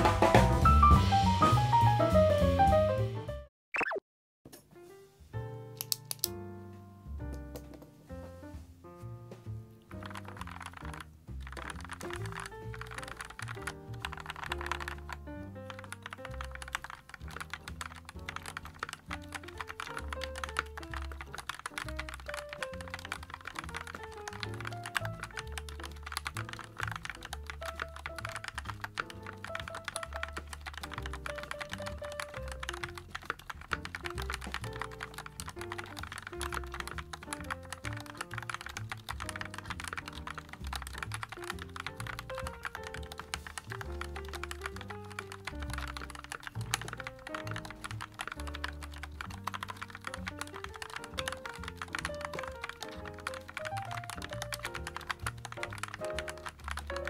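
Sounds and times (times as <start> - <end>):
background music with bass line: 0.0 - 3.5
mechanical keyboard typing: 9.9 - 57.0.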